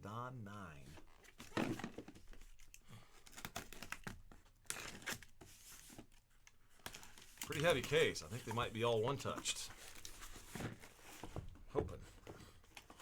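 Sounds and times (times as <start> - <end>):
packaging tearing and crinkling: 2.4 - 5.4.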